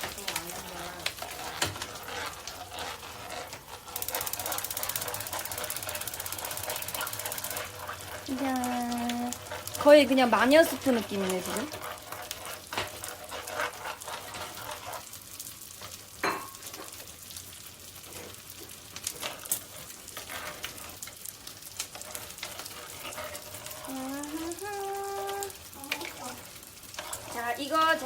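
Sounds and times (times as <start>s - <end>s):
sizzling hiss in pot: 0.0s - 28.0s
person humming: 23.8s - 26.0s.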